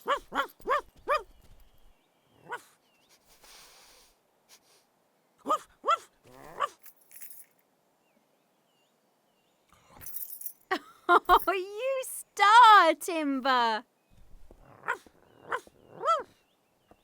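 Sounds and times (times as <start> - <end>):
dog barking: 0.0 - 1.3, 2.4 - 2.7, 5.4 - 6.8, 14.8 - 16.3.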